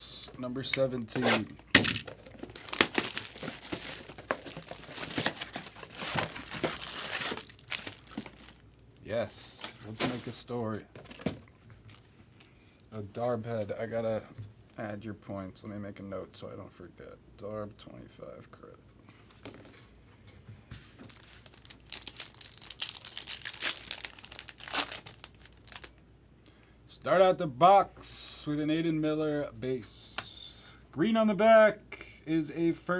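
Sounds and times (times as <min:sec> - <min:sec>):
packaging crinkling and tearing: 0:00.8 - 0:10.5, 0:21.1 - 0:26.0.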